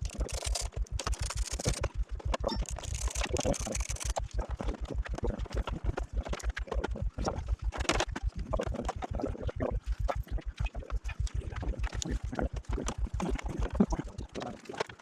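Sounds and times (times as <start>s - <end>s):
plastic panels clicking and rattling: 0.0s - 4.3s
steady low pulsing: 0.0s - 15.0s.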